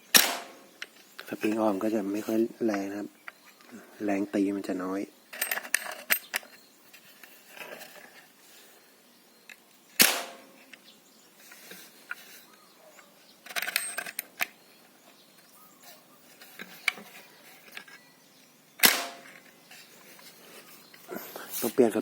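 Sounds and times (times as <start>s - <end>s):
air gun shots: 0.1s - 0.7s, 10.0s - 10.6s, 18.8s - 19.4s
air gun cocking clicks: 18.8s - 19.5s.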